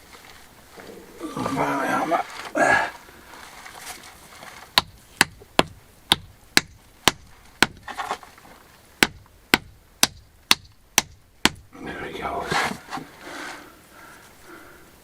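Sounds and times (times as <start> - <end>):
hammer tapping stones: 4.7 - 7.9, 9.0 - 11.7.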